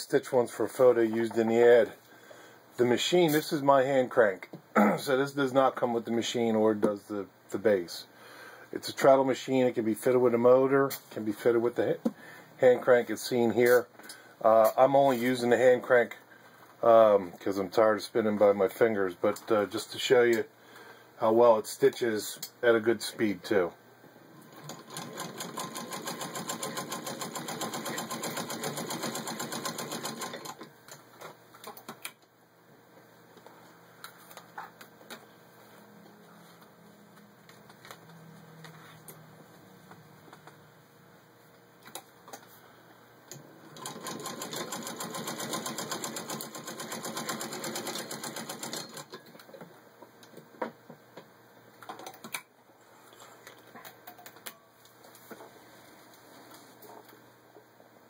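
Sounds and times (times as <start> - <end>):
sewing machine clicks: 24.5 - 30.7, 43.8 - 49.2
sewing machine rapid ticking: 24.6 - 30.6, 43.8 - 49.1.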